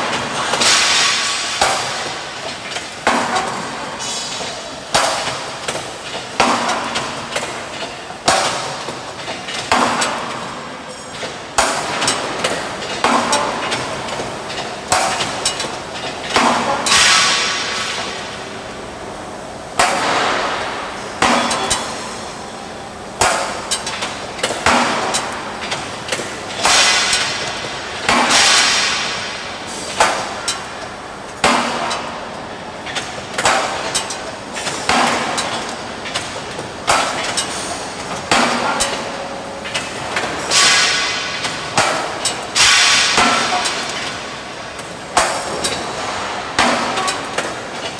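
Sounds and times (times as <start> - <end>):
punching machine metallic bangs: 0.0 - 5.8, 11.6 - 18.4, 19.8 - 22.3, 23.2 - 30.8, 32.9 - 47.6.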